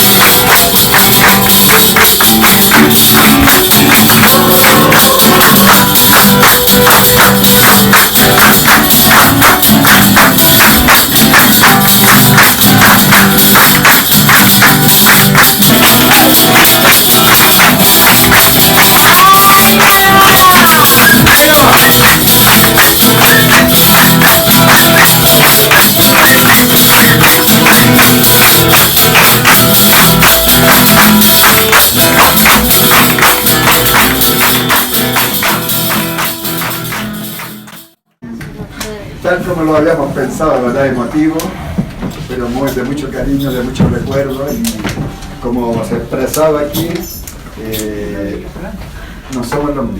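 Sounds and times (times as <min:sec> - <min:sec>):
loud percussive music: 0:00.0 - 0:38.0.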